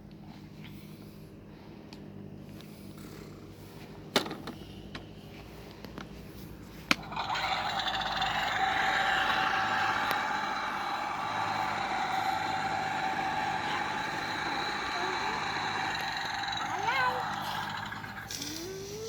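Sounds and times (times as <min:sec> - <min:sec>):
toy mower engine sound effect: 0:07.0 - 0:19.0.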